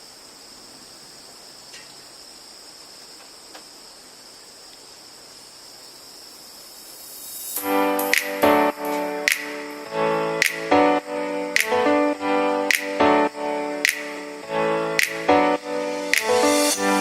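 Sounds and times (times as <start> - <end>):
crickets trilling: 0.0 - 17.0
music: 7.6 - 17.0.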